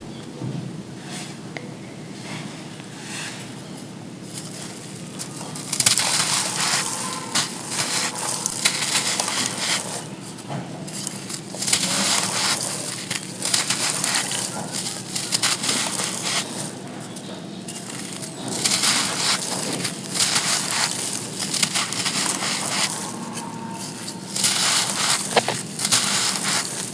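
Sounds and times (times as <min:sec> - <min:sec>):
dry sand crunching: 0:04.2 - 0:26.9.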